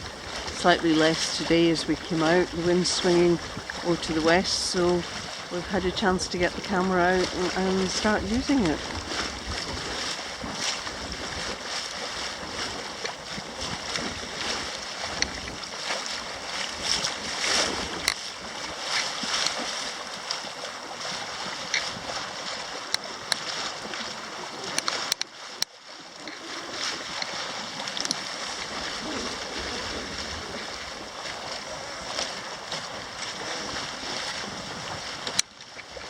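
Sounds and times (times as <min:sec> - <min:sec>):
wind buffeting the microphone: 0:00.0 - 0:19.7, 0:28.0 - 0:36.0
water rushing along a hull: 0:00.0 - 0:36.0.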